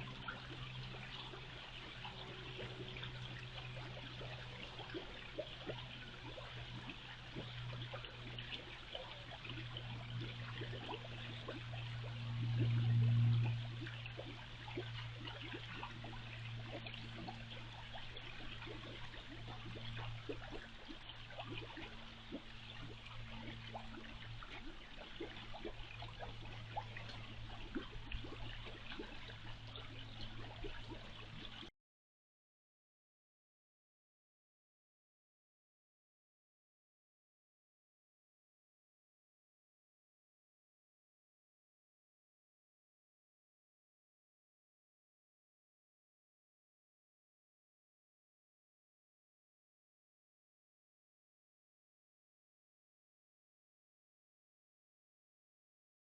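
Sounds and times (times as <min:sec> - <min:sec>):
steady low hum: 0:00.0 - 0:31.7
water running and trickling: 0:00.0 - 0:31.7.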